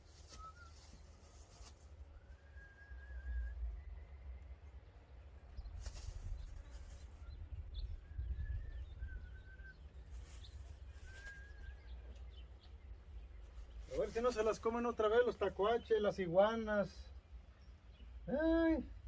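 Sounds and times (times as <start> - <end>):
whistled bird calls: 0.0 - 1.2, 2.0 - 4.6, 7.1 - 12.6
short rustles: 5.8 - 7.3.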